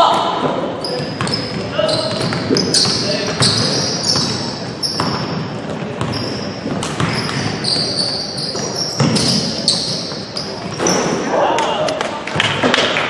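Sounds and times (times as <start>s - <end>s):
sneakers squeaking: 0.0s - 12.0s
basketball bouncing on floor: 5.0s - 5.3s, 6.0s - 7.9s, 8.6s - 11.0s.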